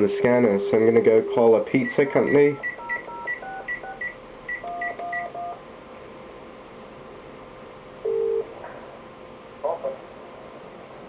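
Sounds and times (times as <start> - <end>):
low phone tone: 0.1 - 4.0
touch-tone keypad beeps: 1.8 - 5.6.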